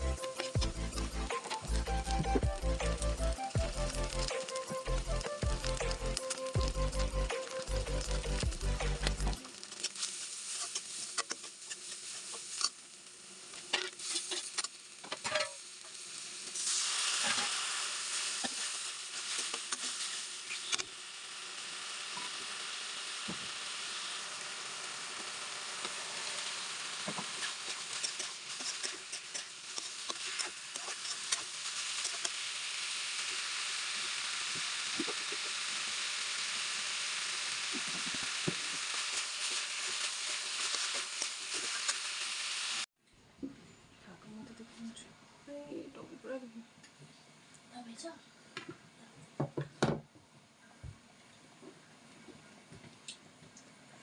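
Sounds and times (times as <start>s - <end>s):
food sizzling in hot oil: 0.0s - 42.9s.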